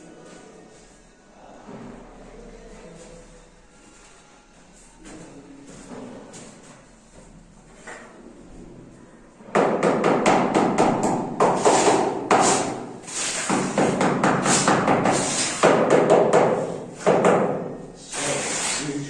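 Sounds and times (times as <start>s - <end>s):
loud hammering and knocking: 9.5s - 17.8s.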